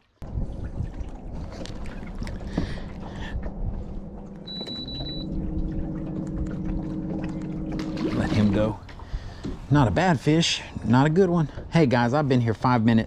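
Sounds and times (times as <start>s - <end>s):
water splashing: 0.0s - 12.6s
steady motor hum: 0.2s - 10.0s
high beeps: 4.5s - 5.4s.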